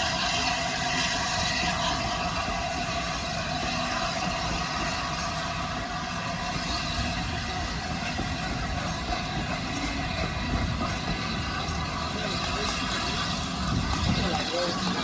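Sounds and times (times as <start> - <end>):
train rumbling: 0.0 - 15.0.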